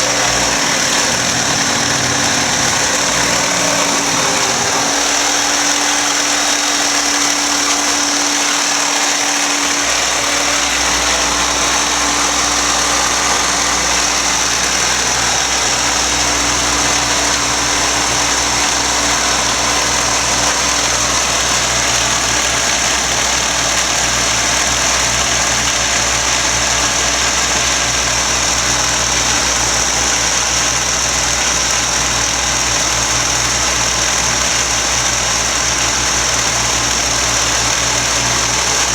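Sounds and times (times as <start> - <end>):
deep rumble: 0.0 - 28.8
vacuum cleaner running: 0.0 - 38.9.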